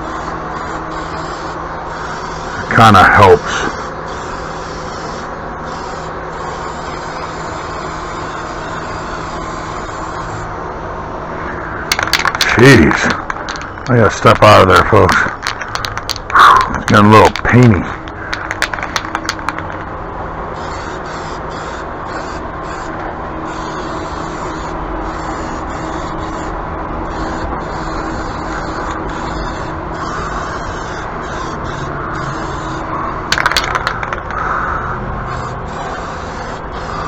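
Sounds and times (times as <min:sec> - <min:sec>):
spray paint hissing: 0:00.0 - 0:02.7, 0:03.4 - 0:10.4, 0:20.6 - 0:26.5, 0:27.1 - 0:34.5, 0:35.3 - 0:37.0
box fan humming: 0:00.0 - 0:37.0.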